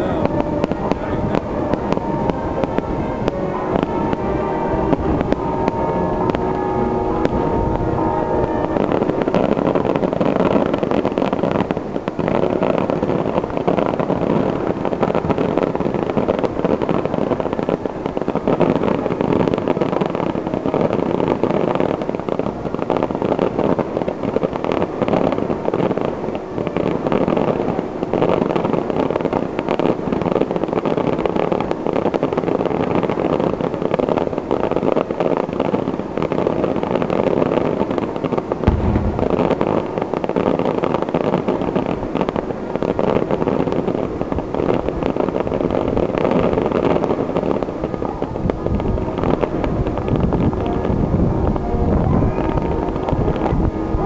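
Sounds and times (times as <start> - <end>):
heavy low bang: 0.0 - 11.0, 38.6 - 40.4
fireworks crackling and bursting: 0.0 - 54.0.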